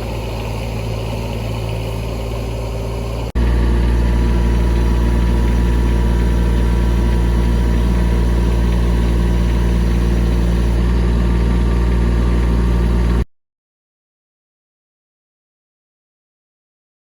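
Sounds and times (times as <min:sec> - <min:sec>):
diesel engine running: 0:00.0 - 0:13.2.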